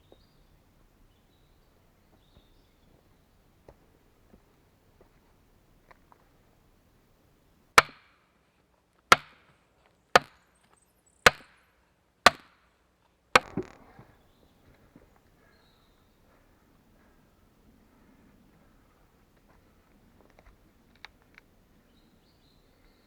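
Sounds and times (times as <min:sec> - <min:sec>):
axe chopping wood: 0:07.8 - 0:08.2, 0:09.1 - 0:09.5, 0:10.2 - 0:10.4, 0:11.3 - 0:11.6, 0:12.3 - 0:12.6, 0:13.4 - 0:14.0
wood clattering: 0:13.4 - 0:14.1.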